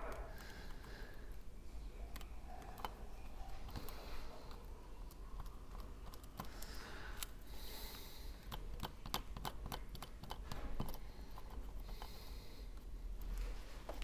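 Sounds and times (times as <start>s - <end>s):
small tools clicking on phone parts: 8.4s - 13.4s.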